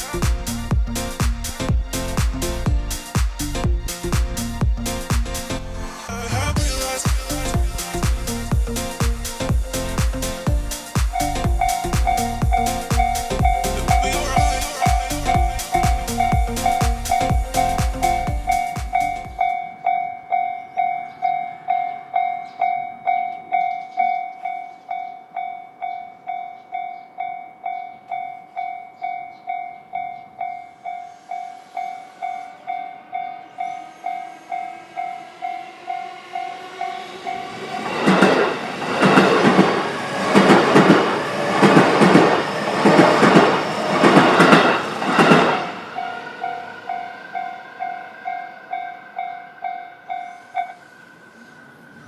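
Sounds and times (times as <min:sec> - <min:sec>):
level-crossing warning bell ringing: 0:10.8 - 0:52.0
train wheels clattering over rail joints: 0:38.1 - 0:45.7.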